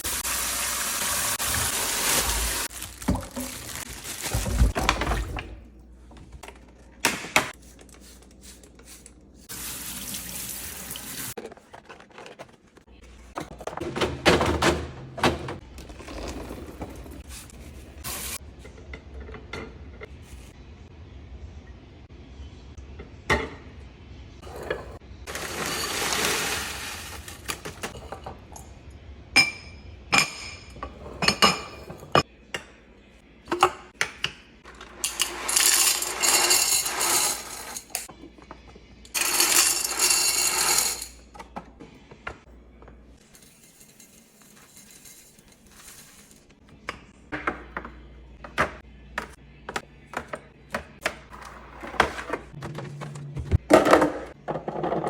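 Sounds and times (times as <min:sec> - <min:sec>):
glass jars clinking: 0:29.4 - 0:32.2, 0:35.0 - 0:38.1.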